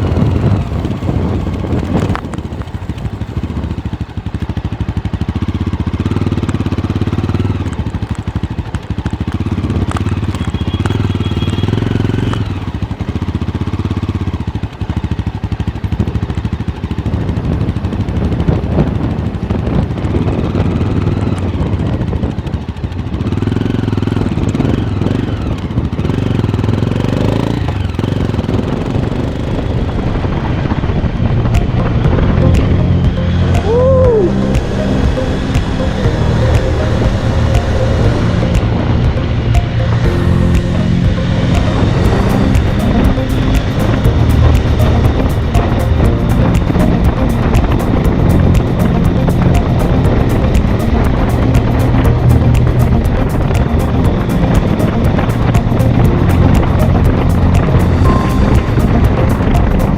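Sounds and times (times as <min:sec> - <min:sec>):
motorcycle engine revving: 0:00.0 - 0:59.9.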